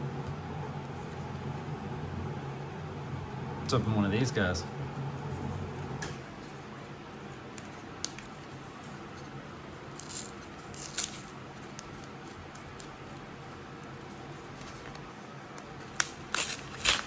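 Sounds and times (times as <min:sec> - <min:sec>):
small clicks of foil wrapper: 0:09.9 - 0:13.0, 0:14.6 - 0:17.0
foil wrapper crinkling rips: 0:09.9 - 0:13.3, 0:15.7 - 0:17.0.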